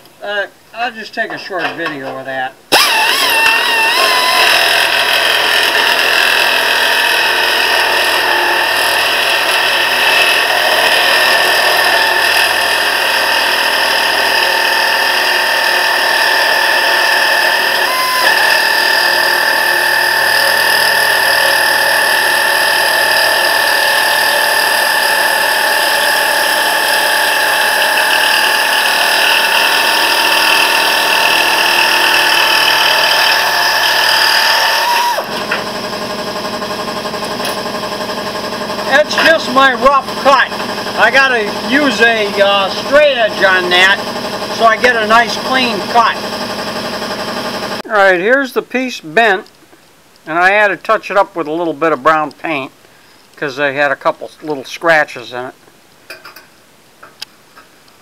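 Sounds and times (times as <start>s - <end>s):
air nibbler cutting sheet metal: 2.7s - 35.8s, 38.8s - 47.8s.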